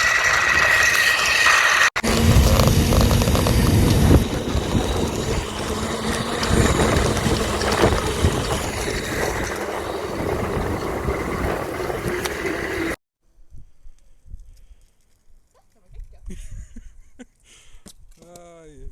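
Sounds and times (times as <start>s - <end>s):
vehicle rumbling in motion: 1.9s - 13.0s.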